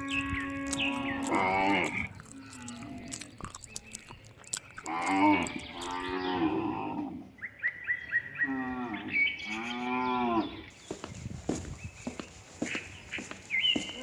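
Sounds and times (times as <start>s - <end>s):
cows mooing: 0.0s - 3.3s, 4.8s - 7.2s.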